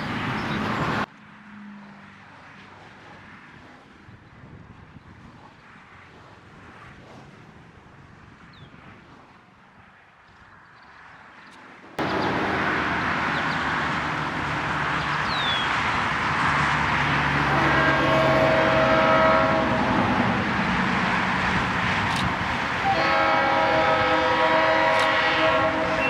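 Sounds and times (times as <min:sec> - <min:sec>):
diesel locomotive engine: 0:00.0 - 0:08.5, 0:11.6 - 0:26.0
faint outdoor ambience: 0:00.0 - 0:26.0
train air horn: 0:17.3 - 0:20.3, 0:22.8 - 0:26.0.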